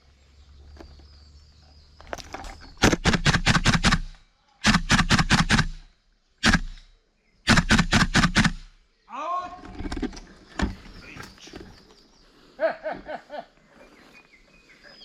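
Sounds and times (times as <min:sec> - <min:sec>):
airsoft gun firing sharp shots: 0:02.8 - 0:08.8.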